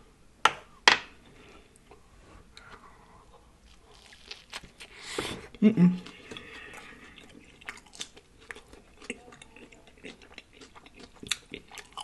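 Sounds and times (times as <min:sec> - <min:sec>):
chewing and mouth smacking: 0:06.0 - 0:12.0.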